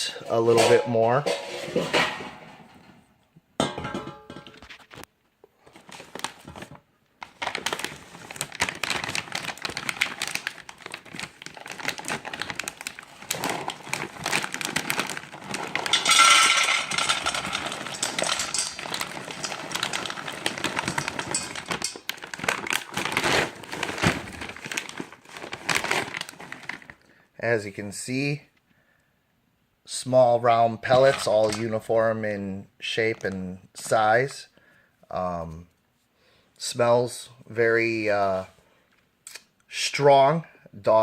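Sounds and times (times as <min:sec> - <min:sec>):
dog food bag crinkling: 0:05.6 - 0:27.0.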